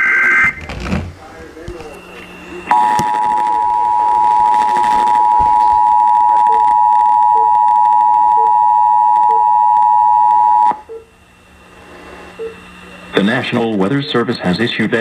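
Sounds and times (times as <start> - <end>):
high-pitched alarm tone: 0.0 - 0.6, 1.5 - 11.1, 12.2 - 13.4.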